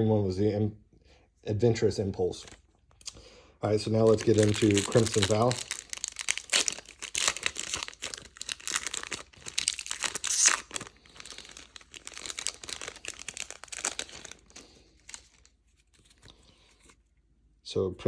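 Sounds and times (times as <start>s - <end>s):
foil wrapper crinkling and tearing: 3.8s - 17.0s.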